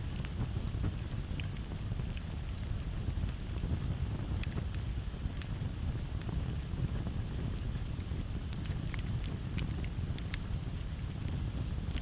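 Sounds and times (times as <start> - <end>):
campfire crackling and popping: 0.0 - 12.0.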